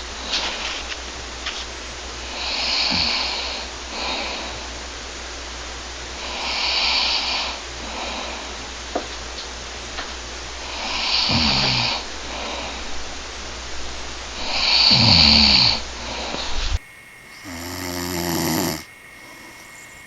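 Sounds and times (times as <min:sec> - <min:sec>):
man snoring: 0:02.5 - 0:04.4, 0:10.9 - 0:12.0, 0:14.6 - 0:15.8, 0:17.3 - 0:20.0.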